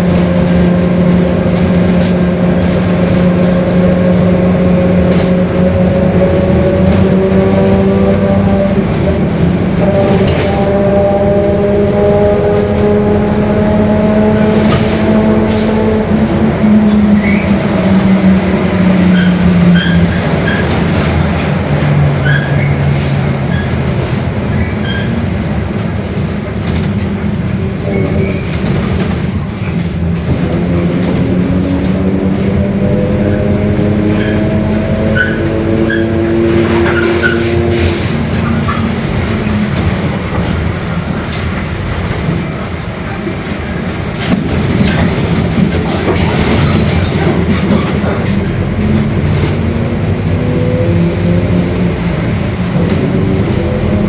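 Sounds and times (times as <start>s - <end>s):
bus diesel engine droning: 0.0s - 54.0s
squeaks and rattles: 19.0s - 25.4s, 44.2s - 49.0s.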